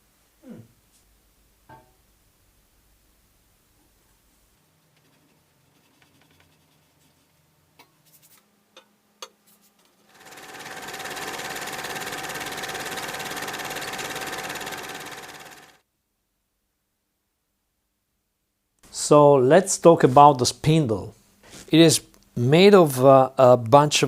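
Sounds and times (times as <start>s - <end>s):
small motorised tool buzzing: 10.1s - 15.8s.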